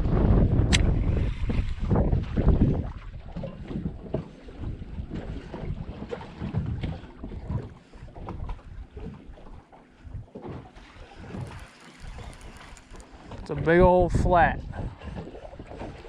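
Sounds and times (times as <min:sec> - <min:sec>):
wind rumbling on microphone: 0:00.0 - 0:16.0.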